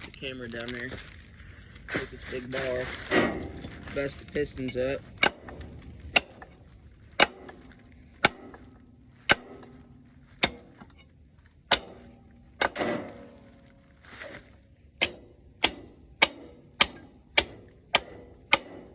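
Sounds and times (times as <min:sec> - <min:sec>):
steel bar striking metal: 0:07.2 - 0:07.6, 0:08.2 - 0:10.7, 0:11.7 - 0:13.3, 0:15.0 - 0:18.9.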